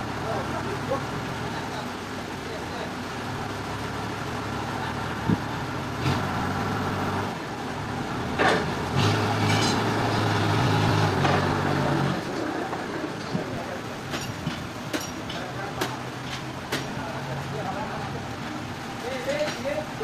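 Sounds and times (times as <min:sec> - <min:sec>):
sharp knocks and clanks: 0:14.0 - 0:17.1.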